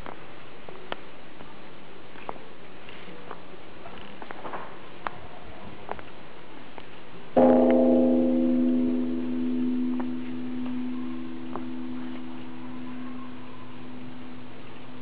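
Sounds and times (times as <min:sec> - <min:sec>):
temple bell ringing: 0:07.4 - 0:15.0.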